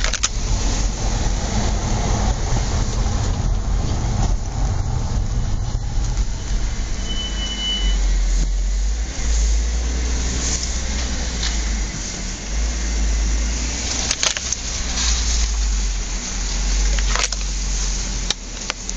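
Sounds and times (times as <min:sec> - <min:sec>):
sharp clicks: 0:00.0 - 0:00.4
car driving rumble: 0:00.0 - 0:18.9
brake squeal: 0:02.8 - 0:18.9.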